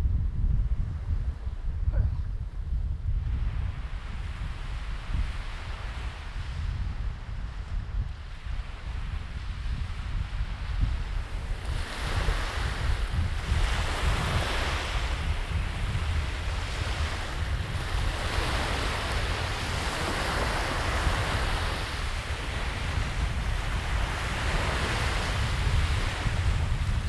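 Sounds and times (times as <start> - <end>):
wind rumbling on microphone: 0.0 - 27.0
sea waves washing: 11.4 - 27.0.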